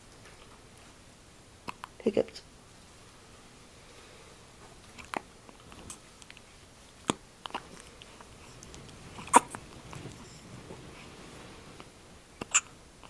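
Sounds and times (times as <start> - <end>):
baby hiccuping: 9.2 - 9.6, 12.4 - 12.8.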